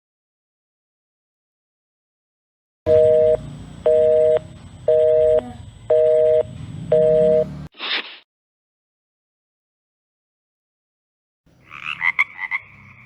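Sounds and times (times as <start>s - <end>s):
telephone busy signal: 2.9s - 7.6s
faint line hum: 2.9s - 7.7s.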